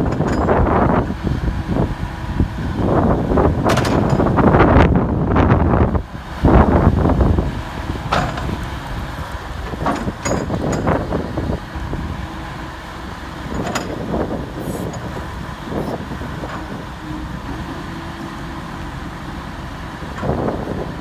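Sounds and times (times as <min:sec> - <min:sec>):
excavator diesel engine rumbling: 0:00.0 - 0:21.0.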